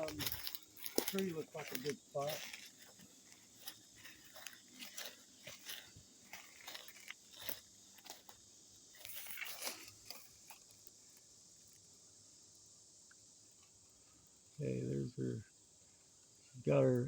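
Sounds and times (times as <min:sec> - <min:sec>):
dry leaves and twigs crunching: 0:00.0 - 0:12.0.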